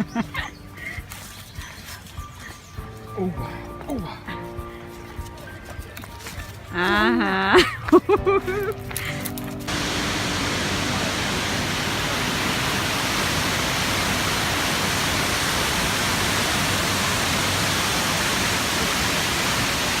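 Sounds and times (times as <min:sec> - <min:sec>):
waterfall rushing: 0:09.7 - 0:20.0.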